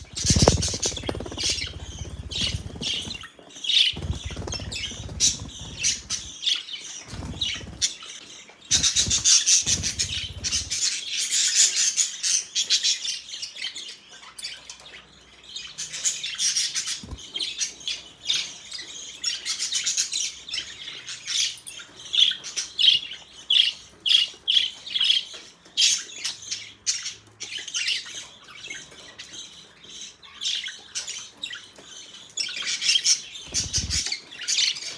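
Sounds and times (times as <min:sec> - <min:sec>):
budgerigars chirping: 0:00.0 - 0:13.0, 0:22.2 - 0:34.9.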